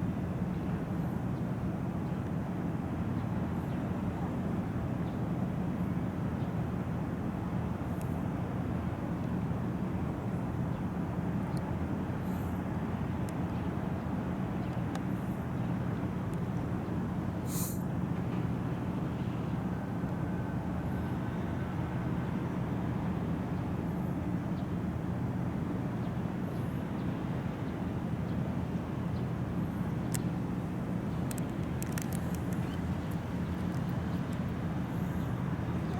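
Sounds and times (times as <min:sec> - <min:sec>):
ferry engines droning: 0:00.1 - 0:35.9
brief hiss: 0:17.4 - 0:17.8.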